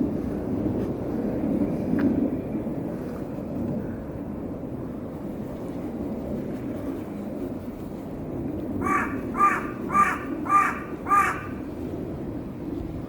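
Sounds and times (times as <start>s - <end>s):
bird cawing: 8.8s - 11.7s.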